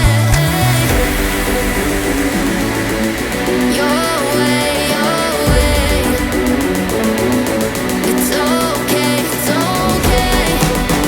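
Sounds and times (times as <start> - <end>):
deep bass: 0.0 - 11.0
electronic pop music: 0.0 - 11.0.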